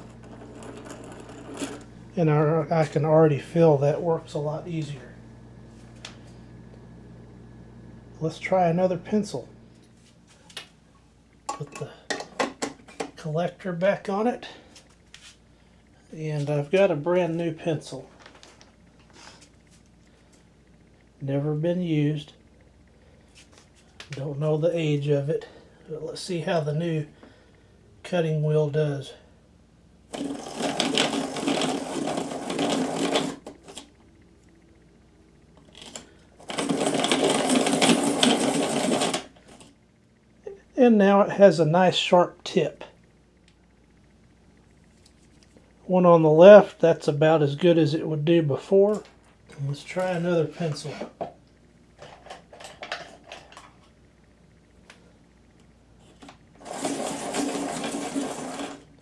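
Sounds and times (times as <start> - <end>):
pencil sharpener grinding: 0.0 - 1.9, 30.1 - 33.9, 35.8 - 39.3, 56.6 - 58.8
hand-crank pencil sharpener cranking: 30.1 - 33.8, 35.8 - 39.3, 56.6 - 58.8.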